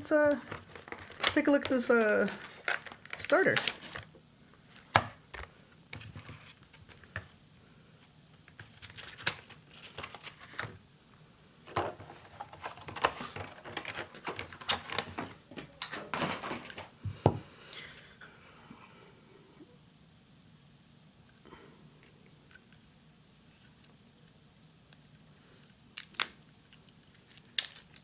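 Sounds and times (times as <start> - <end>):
plastic wrap crinkling: 0.3 - 4.1, 26.0 - 28.0.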